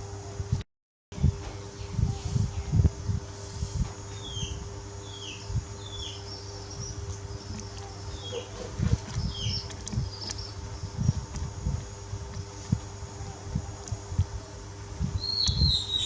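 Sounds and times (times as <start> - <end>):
faint hum: 0.0 - 16.0
low muffled thumps: 6.7 - 14.4
high chirps: 15.2 - 16.0.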